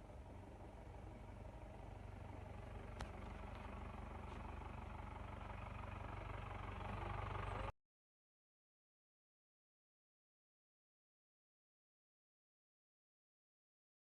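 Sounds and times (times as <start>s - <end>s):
vehicle engine humming: 0.0s - 7.8s.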